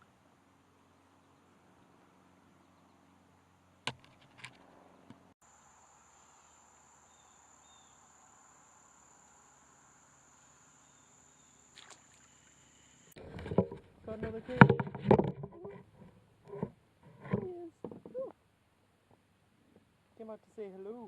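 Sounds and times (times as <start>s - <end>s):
insects trilling: 5.4s - 13.2s
soft knocks: 13.3s - 18.2s.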